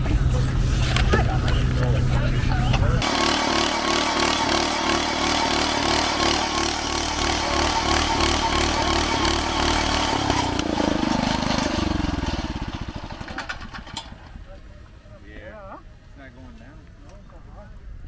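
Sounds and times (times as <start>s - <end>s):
small engine running: 0.0s - 14.5s.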